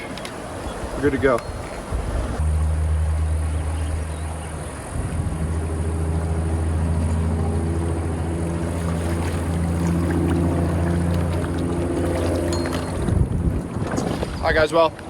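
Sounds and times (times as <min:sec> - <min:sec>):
engine droning: 0:02.2 - 0:14.0.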